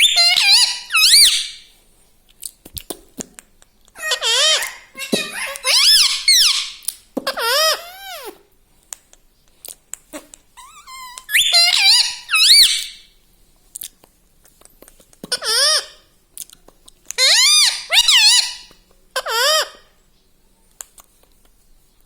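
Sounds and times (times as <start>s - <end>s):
parakeet squawking: 0.0s - 1.7s, 4.0s - 8.4s, 10.6s - 13.1s, 15.3s - 16.0s, 17.2s - 19.9s.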